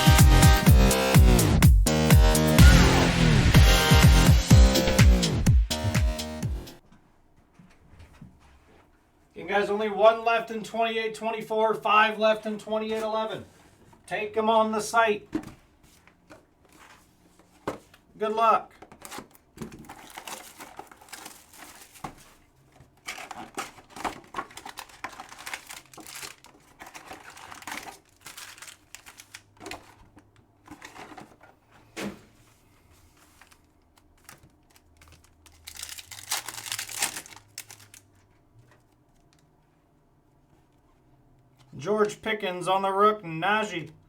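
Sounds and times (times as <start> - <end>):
wrappers crinkling and tearing: 19.0 - 30.1, 33.2 - 39.4.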